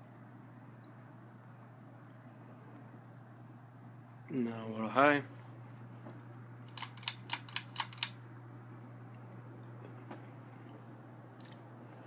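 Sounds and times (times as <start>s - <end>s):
ceiling fan motor humming: 0.0s - 12.0s
sharp clicks: 6.7s - 8.2s.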